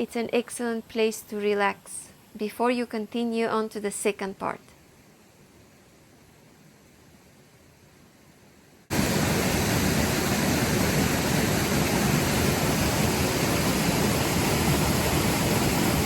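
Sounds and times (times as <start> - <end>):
faint hiss: 0.0 - 16.0
waterfall rushing: 8.9 - 16.0.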